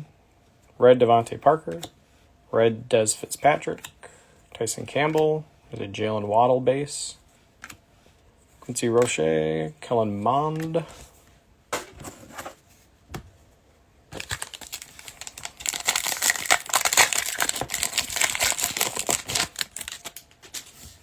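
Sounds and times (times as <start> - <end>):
card pack wrapper tearing and crinkling: 14.1 - 20.8.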